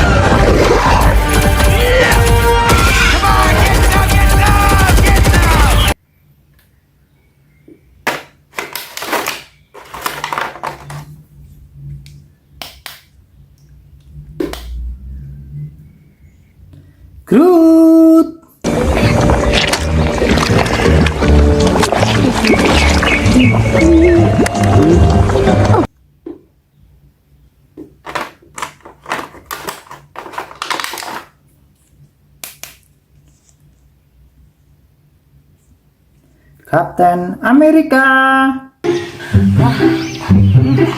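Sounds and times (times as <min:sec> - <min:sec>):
plastic and cardboard crinkling: 0:08.1 - 0:11.2, 0:18.7 - 0:23.4, 0:27.9 - 0:32.0
plastic packaging crackling: 0:08.5 - 0:11.1, 0:18.7 - 0:23.4, 0:28.0 - 0:31.9.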